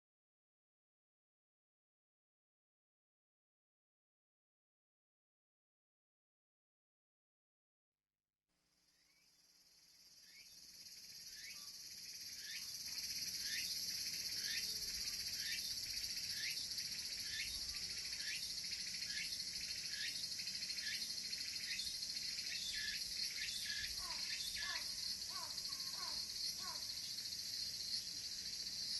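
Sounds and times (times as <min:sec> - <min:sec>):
cicada chirps: 0:08.8 - 0:28.9
cicada buzzing: 0:10.2 - 0:28.9.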